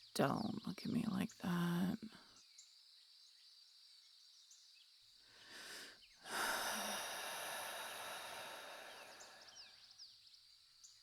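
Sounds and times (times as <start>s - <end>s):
birds chirping: 0.0s - 2.6s, 5.4s - 11.0s
woman sighing: 5.5s - 9.5s.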